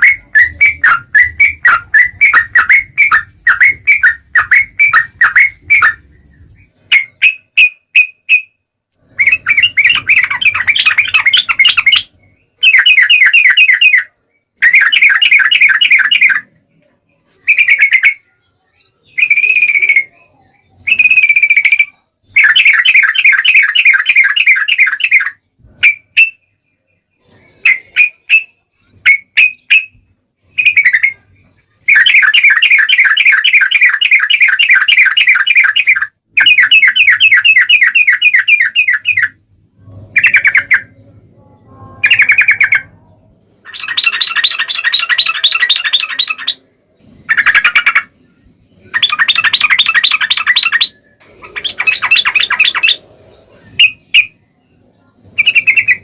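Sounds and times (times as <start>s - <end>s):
bird chattering calls: 0.0s - 6.1s, 9.1s - 16.5s, 40.1s - 41.0s, 42.0s - 43.0s, 43.6s - 46.6s, 47.2s - 48.2s, 48.8s - 54.4s, 55.4s - 56.0s.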